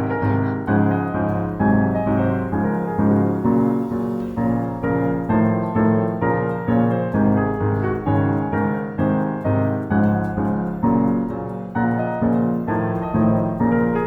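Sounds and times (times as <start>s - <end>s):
piano repeated chords: 0.0s - 14.0s.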